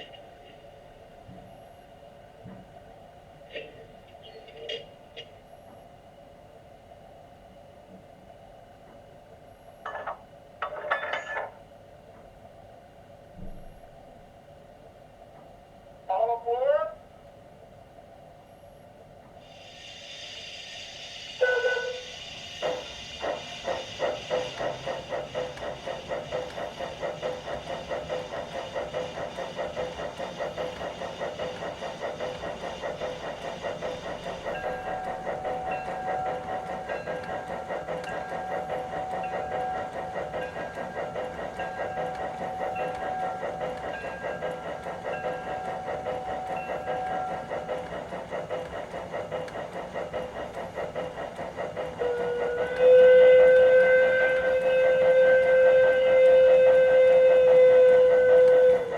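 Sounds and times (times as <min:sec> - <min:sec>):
steam hiss: 0:19.4 - 0:58.9
locomotive exhaust chuffs: 0:19.5 - 0:58.9
steam whistle toot: 0:19.8 - 0:24.6, 0:52.0 - 0:58.9.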